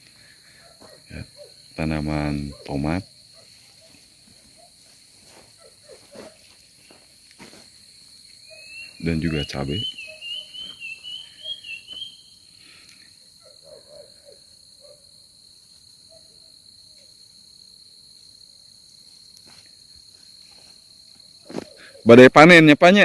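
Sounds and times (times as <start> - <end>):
insects chirring: 0.0 - 23.0
wavering whistle-like call: 8.5 - 12.4.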